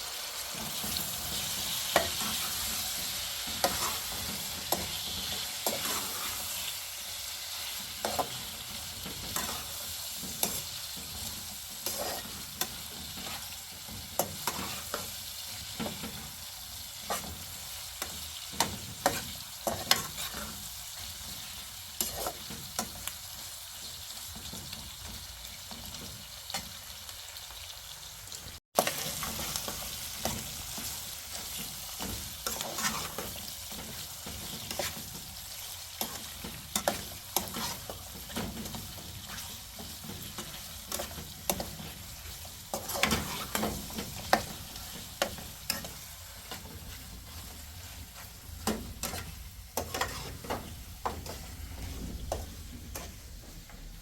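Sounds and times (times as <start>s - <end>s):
food sizzling in a pan: 0.0s - 54.0s.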